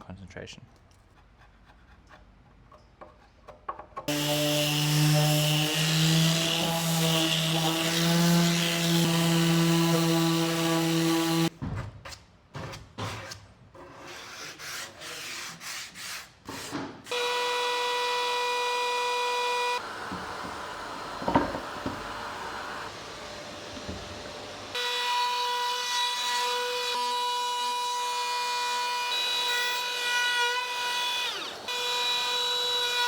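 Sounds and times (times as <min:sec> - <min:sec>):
power tool whine: 0:04.1 - 0:11.5, 0:17.1 - 0:33.0.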